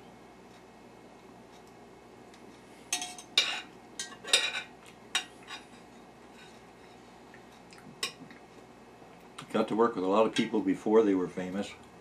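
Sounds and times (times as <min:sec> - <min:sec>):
cutlery clinking on a plate: 0:02.9 - 0:06.6.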